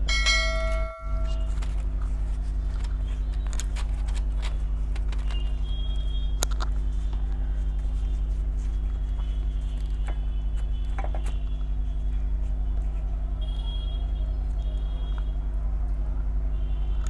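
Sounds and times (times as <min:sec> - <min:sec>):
low mechanical hum: 0:00.0 - 0:17.0
person eating tearing bread: 0:01.3 - 0:13.1.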